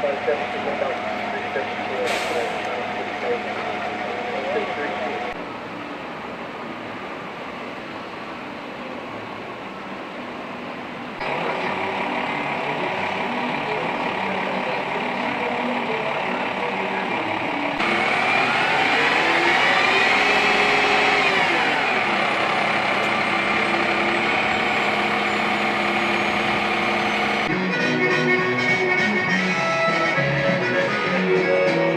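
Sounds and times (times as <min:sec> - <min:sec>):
fire truck engines running: 0:00.0 - 0:31.9
engine revving: 0:11.2 - 0:27.5.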